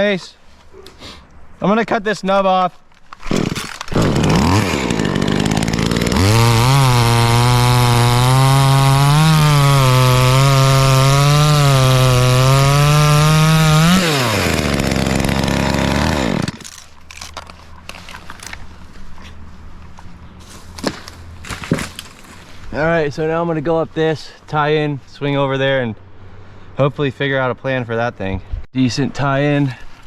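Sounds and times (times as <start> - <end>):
chainsaw cutting branch: 3.2 - 17.5.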